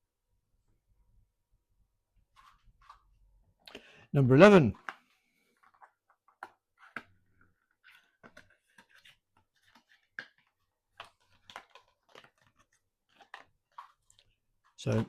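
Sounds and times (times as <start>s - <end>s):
cardboard packaging clicks and taps: 8.2s - 14.3s.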